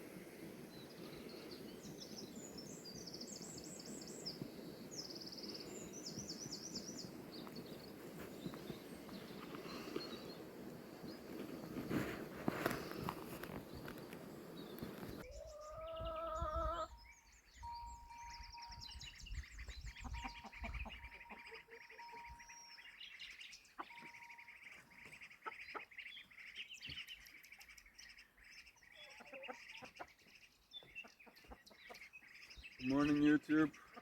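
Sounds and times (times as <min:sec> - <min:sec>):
birds chirping: 0:00.0 - 0:34.0.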